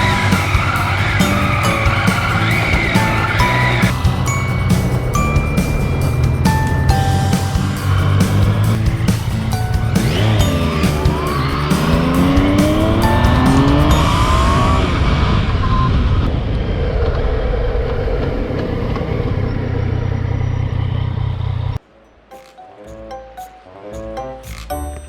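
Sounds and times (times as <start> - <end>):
motorcycle engine running: 0.0 - 15.1
background music: 0.0 - 15.4, 21.8 - 25.0.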